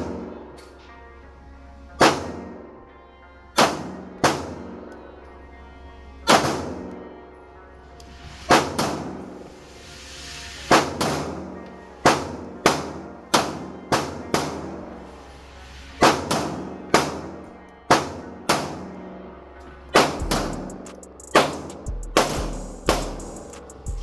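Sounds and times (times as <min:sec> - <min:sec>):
pistol shots with echo: 0:03.6 - 0:04.9, 0:08.5 - 0:09.2, 0:10.8 - 0:14.9.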